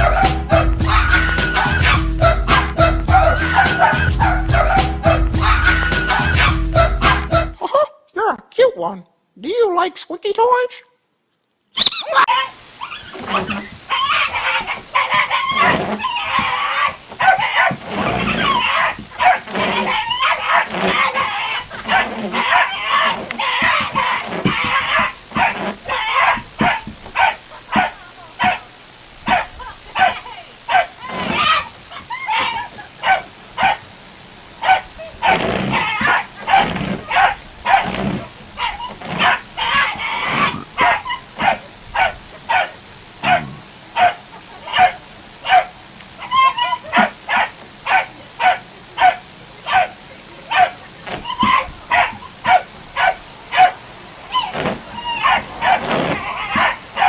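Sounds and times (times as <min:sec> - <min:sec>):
squeaky dog toy squeaking: 0:11.8 - 0:12.3.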